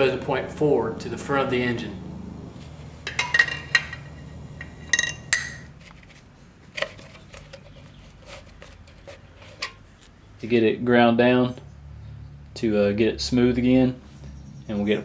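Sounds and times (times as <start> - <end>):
metal parts clinking: 3.0 - 5.7.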